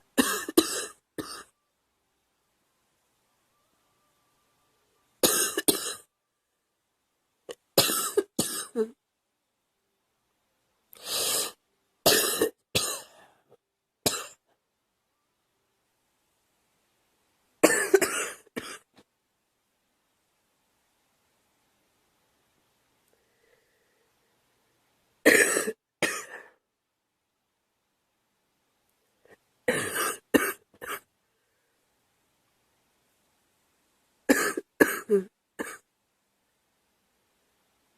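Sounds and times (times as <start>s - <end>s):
girl coughing: 0.2s - 1.5s, 7.8s - 9.0s, 12.1s - 13.2s, 17.6s - 18.9s, 25.3s - 26.5s, 29.7s - 31.0s, 34.3s - 35.8s.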